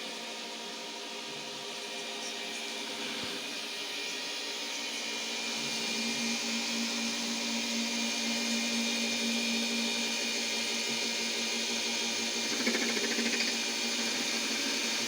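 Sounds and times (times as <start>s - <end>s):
lathe whirring: 3.4s - 15.0s.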